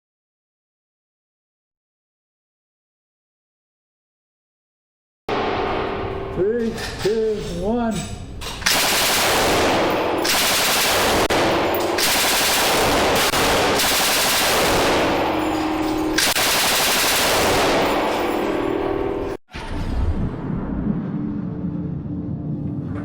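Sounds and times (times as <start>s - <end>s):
machine gun firing: 8.6s - 19.4s.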